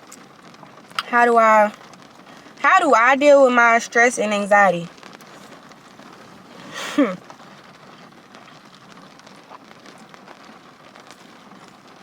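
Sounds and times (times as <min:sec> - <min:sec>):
rain falling on a car: 0:00.0 - 0:12.0
woman humming: 0:06.7 - 0:07.2.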